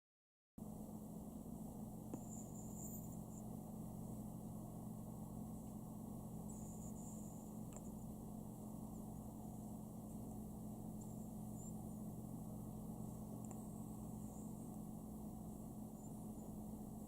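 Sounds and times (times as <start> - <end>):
steady low hum: 0.6 - 17.0.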